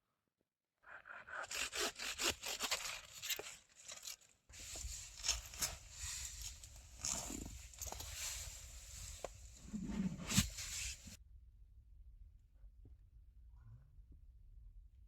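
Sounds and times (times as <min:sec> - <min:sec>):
scraping strokes: 0:01.5 - 0:11.2.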